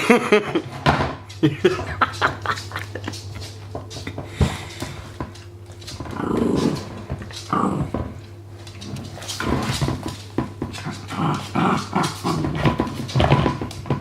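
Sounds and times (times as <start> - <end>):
dog growling: 6.0 - 13.6.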